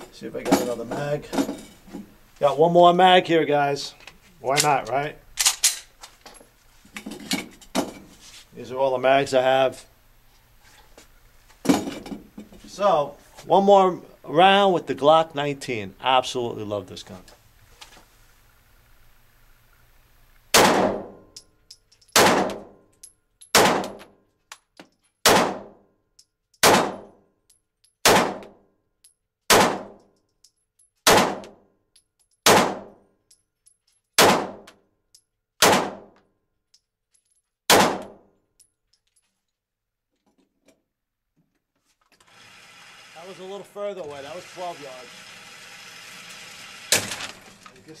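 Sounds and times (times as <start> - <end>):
pistol shots echoing indoors: 20.5 - 21.3, 22.2 - 22.8, 23.5 - 24.1, 25.2 - 25.8, 26.6 - 27.2, 28.0 - 28.6, 29.5 - 30.0, 31.0 - 31.6, 32.4 - 33.0, 34.2 - 34.7, 35.6 - 36.2, 37.7 - 38.3.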